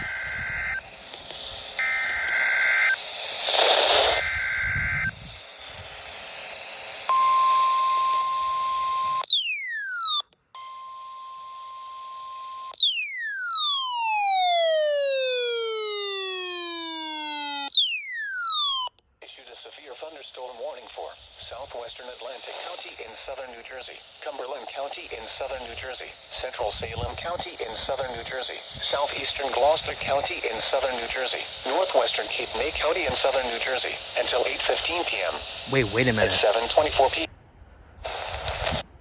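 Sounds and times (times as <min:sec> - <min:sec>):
steady single-pitch warning tone: 0:00.0 - 0:03.0, 0:04.1 - 0:05.2, 0:07.1 - 0:19.0
radio hiss: 0:00.0 - 0:09.2, 0:14.0 - 0:17.7, 0:19.2 - 0:37.3, 0:38.0 - 0:38.8.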